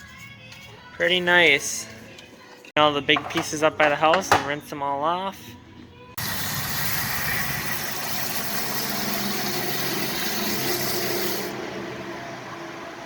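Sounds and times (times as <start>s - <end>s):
water spraying from a hose: 6.2s - 11.5s.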